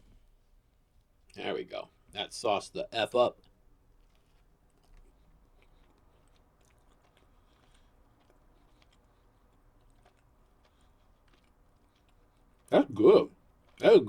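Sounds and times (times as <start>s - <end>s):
man chewing with mouth clicks: 3.4s - 14.0s.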